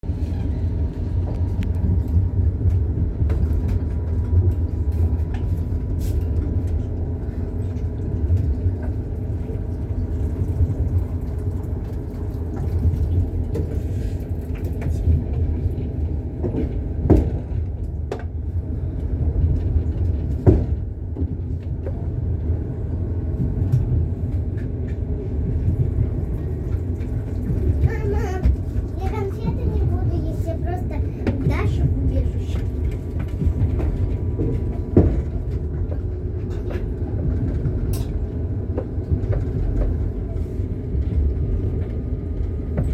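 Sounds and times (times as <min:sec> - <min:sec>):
train rumbling: 0:00.0 - 0:42.9.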